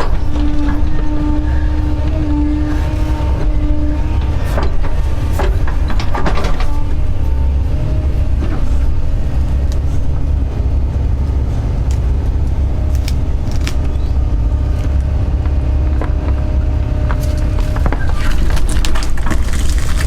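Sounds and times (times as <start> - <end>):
excavator diesel engine running: 0.0 - 20.0
sharp cracks and knocks: 14.8 - 20.0.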